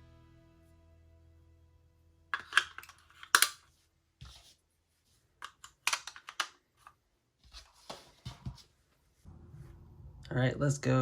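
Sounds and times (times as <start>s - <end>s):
plastic parts clicking and clattering: 2.3s - 3.7s, 5.4s - 7.0s.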